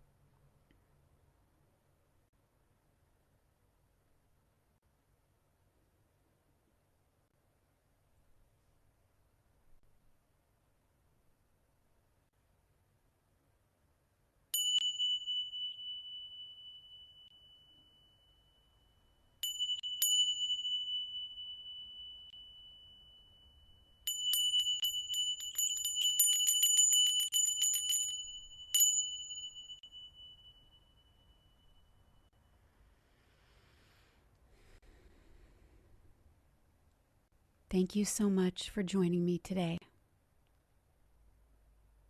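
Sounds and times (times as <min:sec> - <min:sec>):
small high-pitched bell ringing: 0:14.6 - 0:32.4.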